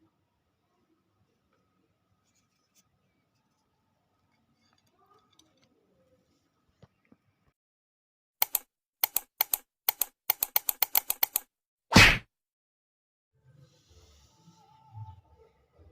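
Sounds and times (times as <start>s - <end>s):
short sharp clicks: 8.4s - 12.2s.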